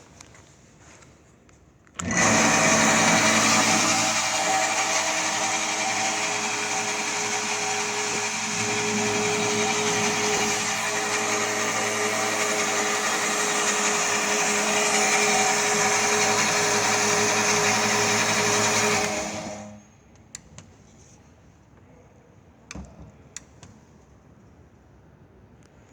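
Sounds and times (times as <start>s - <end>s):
band saw whining: 2.0s - 19.8s.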